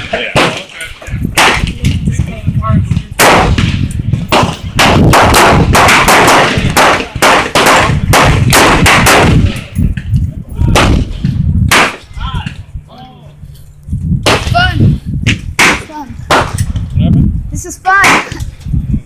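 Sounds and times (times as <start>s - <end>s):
gunfire: 0.0s - 0.8s, 1.4s - 2.0s, 2.9s - 9.7s, 10.7s - 12.1s, 14.2s - 14.7s, 15.3s - 16.6s.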